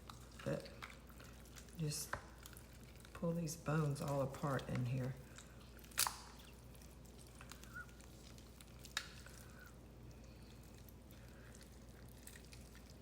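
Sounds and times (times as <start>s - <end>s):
low steady hum: 0.0s - 13.0s
chicken being pulled apart: 5.3s - 9.8s.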